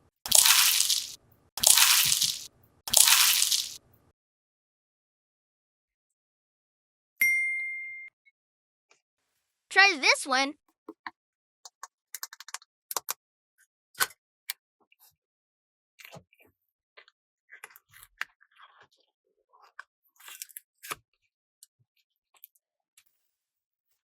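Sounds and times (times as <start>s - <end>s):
plastic crackling: 0.3s - 3.8s
plastic toys clicking and tapping: 0.3s - 3.8s.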